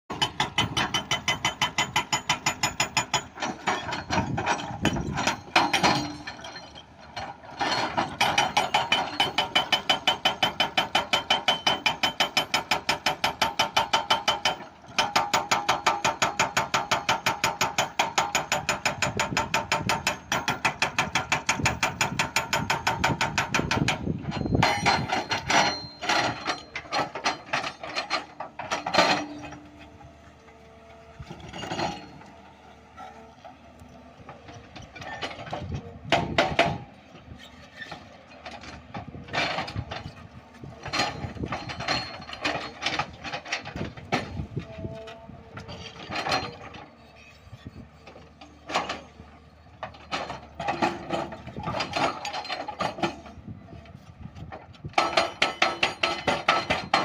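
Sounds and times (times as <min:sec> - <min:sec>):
hydraulic breaker hammering stone: 0:00.1 - 0:29.8, 0:31.2 - 0:32.3, 0:34.8 - 0:36.9, 0:37.9 - 0:46.8, 0:54.5 - 0:57.0.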